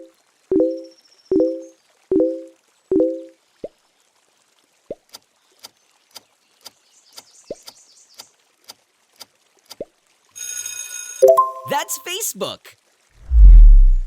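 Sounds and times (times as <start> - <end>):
bright ringing chime: 11.2 - 12.0
rising drop-like blips: 13.2 - 14.0.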